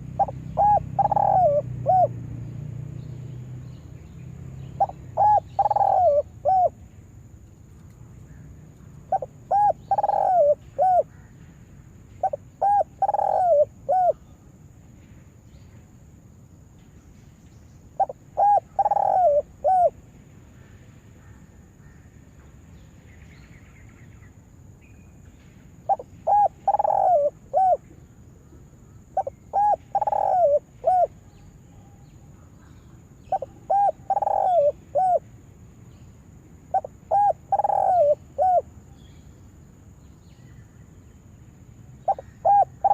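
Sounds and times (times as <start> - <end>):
dove cooing: 0.0 - 2.3, 4.8 - 6.8, 9.1 - 11.2, 12.2 - 14.4, 18.0 - 20.0, 25.9 - 27.9, 29.1 - 31.3, 33.2 - 35.2, 36.7 - 38.7, 42.0 - 42.9.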